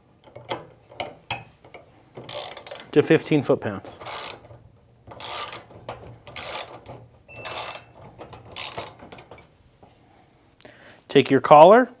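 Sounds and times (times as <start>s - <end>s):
torque wrench ratcheting: 2.3s - 3.0s, 4.0s - 9.4s.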